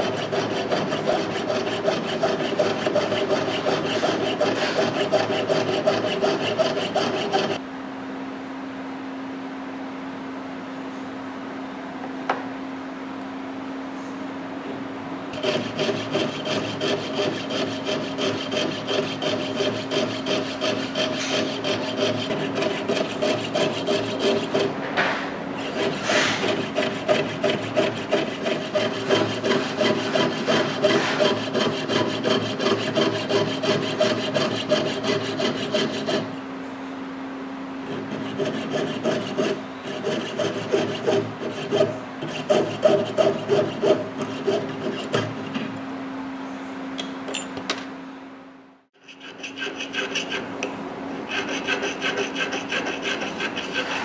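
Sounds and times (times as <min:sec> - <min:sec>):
hand filing metal rasping: 0:00.0 - 0:07.6, 0:15.4 - 0:36.4, 0:37.9 - 0:45.7, 0:49.0 - 0:50.5, 0:51.3 - 0:54.0.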